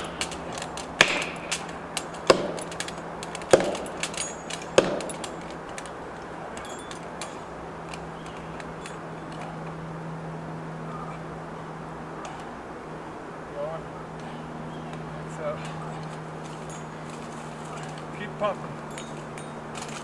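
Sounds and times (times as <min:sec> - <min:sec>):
heavy blows on wood: 0:00.0 - 0:07.4
steady low hum: 0:00.0 - 0:20.0.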